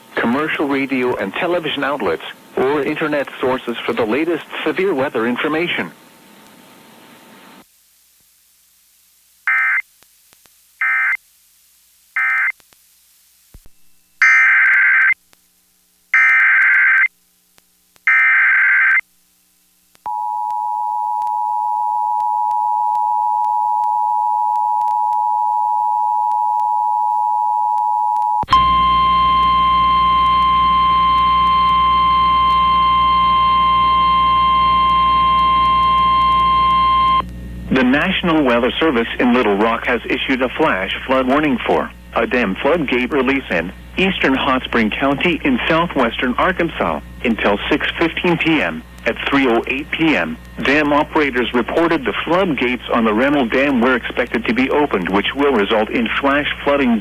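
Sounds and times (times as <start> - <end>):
harsh weather radio alarm tone: 0.2 - 5.9, 9.5 - 9.8, 10.8 - 11.2, 12.2 - 12.6, 14.2 - 15.2, 16.1 - 17.1, 18.0 - 19.0, 20.1 - 57.0
two-tone attention signal: 20.1 - 37.2.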